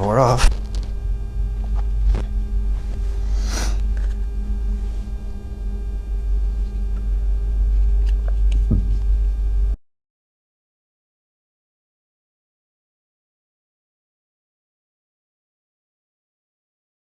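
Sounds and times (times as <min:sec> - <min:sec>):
low electrical mains hum: 0:00.0 - 0:09.8.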